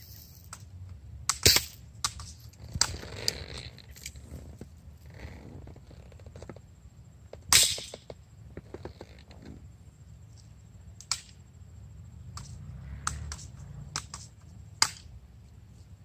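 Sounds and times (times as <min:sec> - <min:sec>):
air gun shots: 0:01.3 - 0:02.3.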